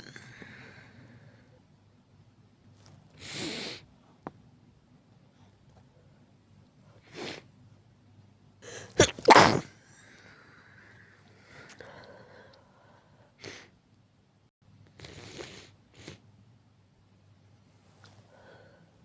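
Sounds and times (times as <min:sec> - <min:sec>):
person sneezing: 0:08.7 - 0:09.7.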